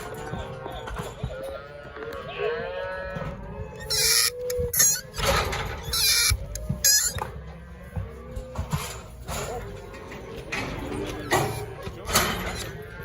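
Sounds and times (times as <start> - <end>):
cattle bawling: 1.9 - 8.8.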